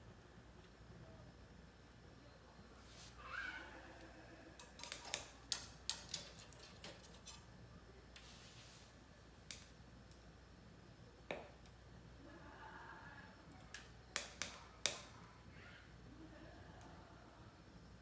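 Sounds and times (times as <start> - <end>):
small objects clicking and tapping: 4.6 - 7.4, 13.5 - 15.2
soft hiss: 8.1 - 9.8.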